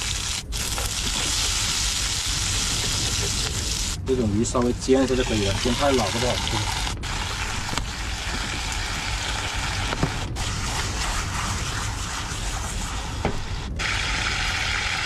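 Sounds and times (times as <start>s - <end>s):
fish sizzling in hot oil: 0.0s - 4.0s, 5.1s - 13.1s.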